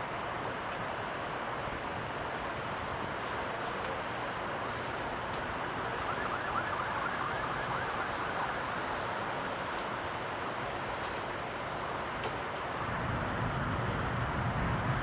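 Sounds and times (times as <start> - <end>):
heavy rain: 0.1 - 15.0
warbling siren: 4.9 - 9.8.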